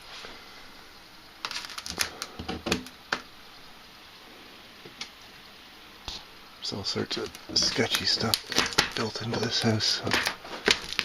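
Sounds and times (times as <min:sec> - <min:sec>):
hard objects clicking and knocking: 0:07.2 - 0:11.0.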